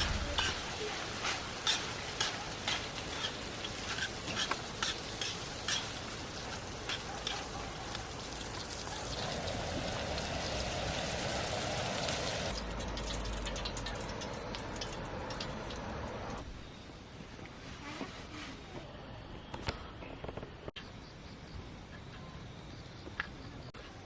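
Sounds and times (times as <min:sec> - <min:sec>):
food sizzling in a hot pan: 0:00.0 - 0:12.6.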